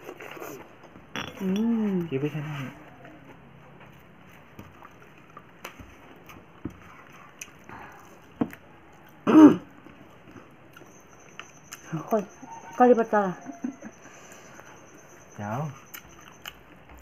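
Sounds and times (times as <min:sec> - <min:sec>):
person clearing throat: 0:09.2 - 0:09.7.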